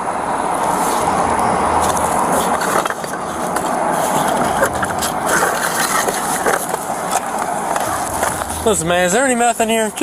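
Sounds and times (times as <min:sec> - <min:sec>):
clicks knocks and rustles of handling: 0:01.8 - 0:08.5.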